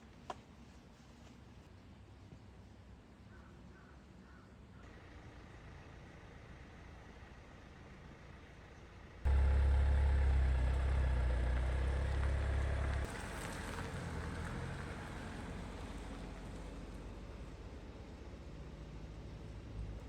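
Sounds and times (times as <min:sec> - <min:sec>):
low engine hum: 0:04.9 - 0:20.0.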